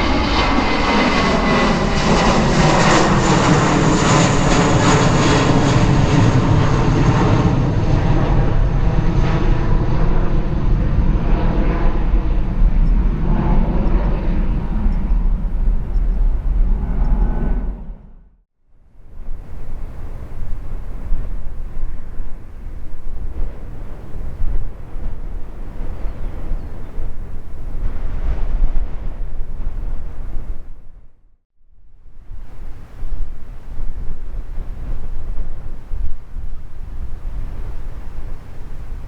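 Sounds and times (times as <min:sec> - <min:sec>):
jet engines passing with whine: 0:00.0 - 0:18.4.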